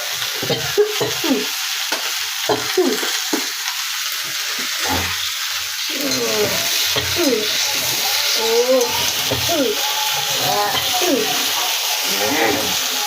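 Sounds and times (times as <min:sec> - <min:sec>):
curry sizzling in a pan: 0:00.0 - 0:13.0
spoon scraping pan: 0:04.2 - 0:11.6.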